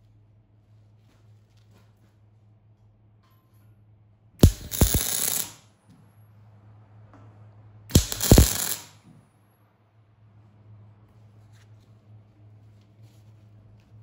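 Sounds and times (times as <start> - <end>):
low electrical hum: 0.0 - 14.0
welding arc crackling: 4.4 - 5.6, 7.9 - 9.0.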